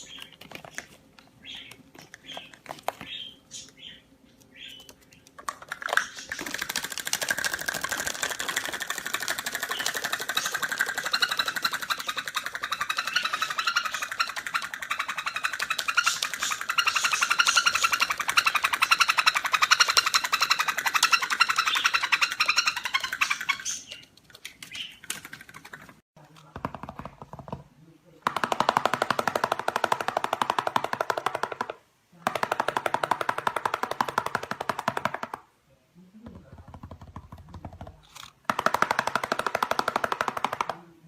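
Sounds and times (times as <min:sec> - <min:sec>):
bird chattering trill: 0:09.5 - 0:24.0.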